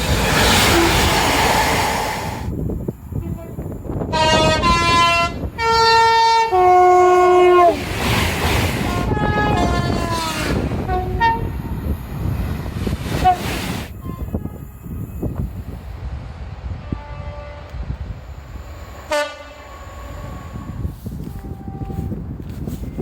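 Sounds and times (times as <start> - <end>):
rail clatter: 0.0 - 2.5, 7.6 - 11.5
train rushing past: 0.0 - 5.7, 7.2 - 21.9
two-tone train horn: 3.2 - 7.8, 8.8 - 11.6, 13.2 - 15.4, 16.8 - 17.8, 19.1 - 22.2.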